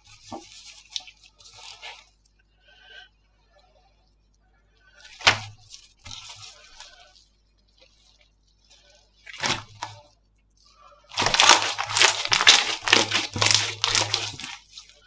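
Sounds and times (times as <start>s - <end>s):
slime squishing: 0.0s - 3.0s, 4.8s - 15.0s
slime crackling: 5.0s - 10.1s, 11.1s - 15.0s.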